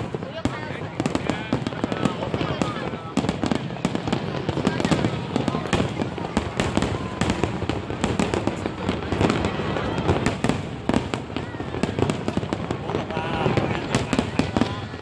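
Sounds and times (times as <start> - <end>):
fireworks banging and crackling: 0.0 - 15.0.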